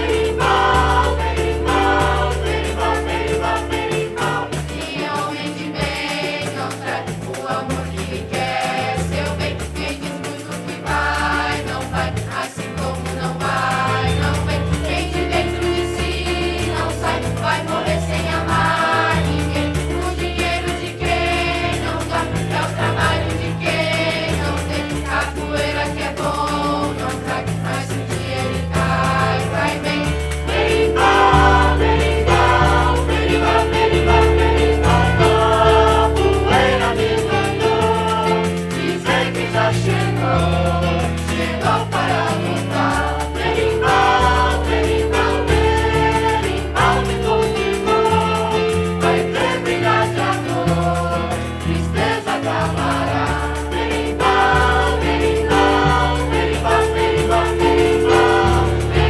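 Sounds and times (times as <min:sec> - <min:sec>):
choir singing: 0:00.0 - 0:59.0
sustained bass notes: 0:27.7 - 0:48.2.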